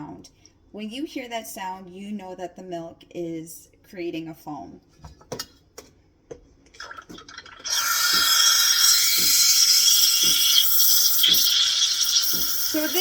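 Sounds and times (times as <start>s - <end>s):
steam wand hissing into milk: 7.7s - 13.0s.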